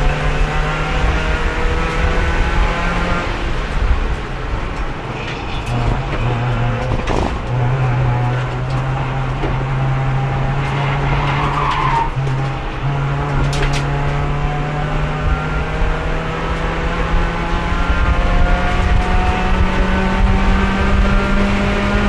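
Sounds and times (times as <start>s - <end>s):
race car engine under load: 0.0s - 22.0s
tire squeal: 5.0s - 9.3s, 10.2s - 13.9s.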